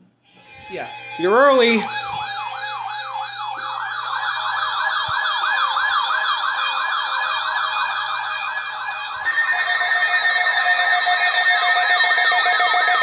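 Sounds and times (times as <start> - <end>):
steady high alarm tone: 0.2 - 13.0
siren-style alert tone: 0.3 - 13.0.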